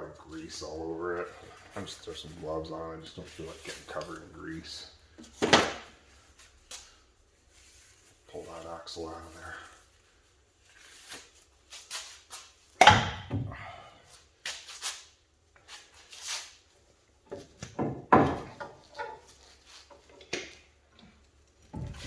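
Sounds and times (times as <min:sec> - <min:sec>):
metal clunks and rattles: 0:21.7 - 0:22.0.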